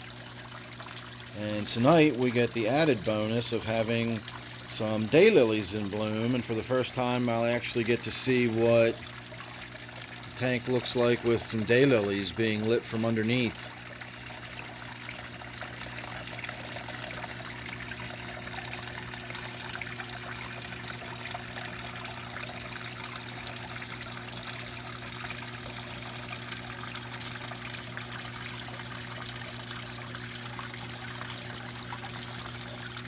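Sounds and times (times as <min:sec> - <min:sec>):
small waterfall trickling: 0:00.0 - 0:33.0.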